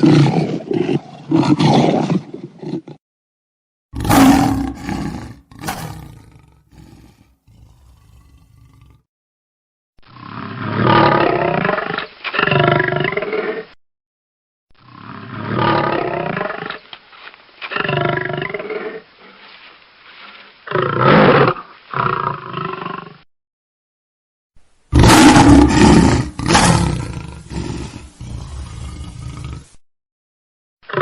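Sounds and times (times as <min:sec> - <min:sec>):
lion roaring: 0:04.0 - 0:09.0, 0:24.9 - 0:29.8.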